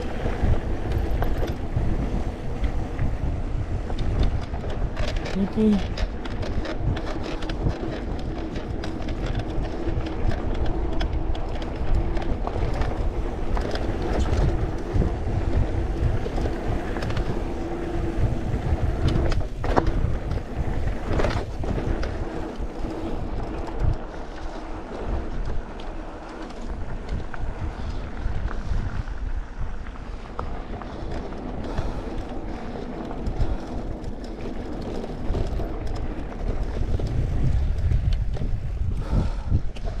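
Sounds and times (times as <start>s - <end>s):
steady motor hum: 0.0s - 29.3s
bike knocking and rattling: 0.0s - 40.0s
tyre rumble: 0.0s - 40.0s
wind on microphone: 0.0s - 40.0s.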